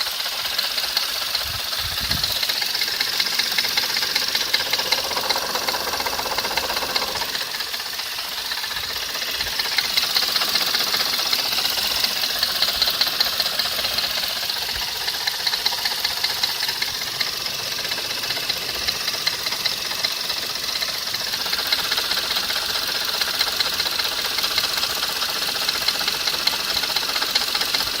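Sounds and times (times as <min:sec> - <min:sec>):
car engine running: 0:00.0 - 0:28.0
fast ticking knock: 0:00.0 - 0:28.0.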